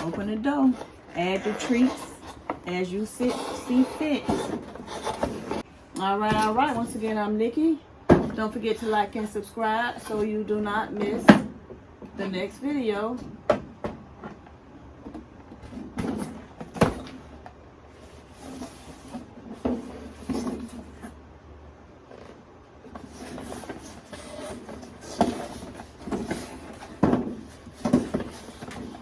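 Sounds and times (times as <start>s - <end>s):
knocks and rustling of handling: 0.0s - 7.1s, 13.1s - 21.3s, 22.0s - 29.0s.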